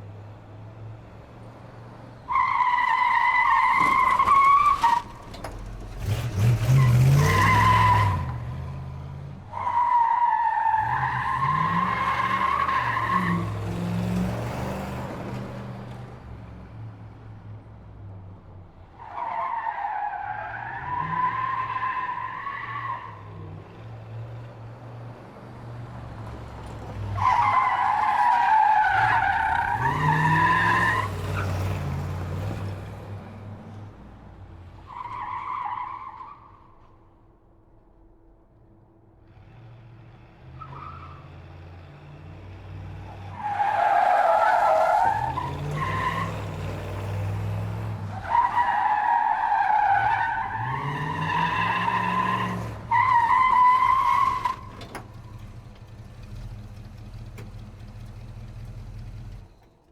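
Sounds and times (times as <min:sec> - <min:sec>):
car engine revving: 0:49.8 - 0:59.7.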